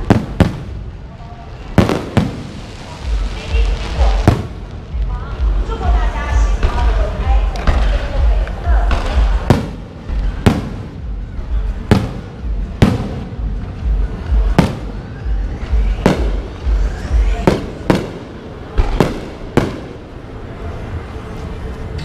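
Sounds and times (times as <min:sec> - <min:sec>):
fireworks bangs: 0:00.0 - 0:05.1, 0:08.8 - 0:13.6, 0:14.3 - 0:20.3.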